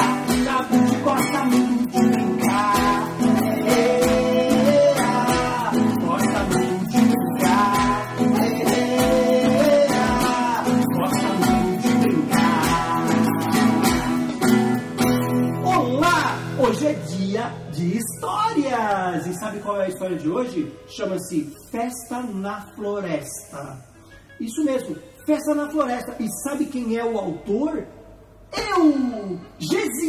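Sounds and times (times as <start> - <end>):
strummed acoustic guitar: 0.0 - 18.2.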